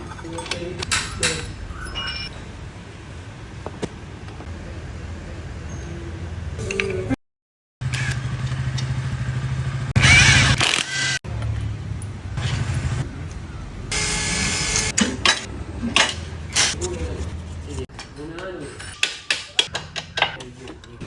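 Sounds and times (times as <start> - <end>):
motorcycle engine running: 7.8 - 10.5.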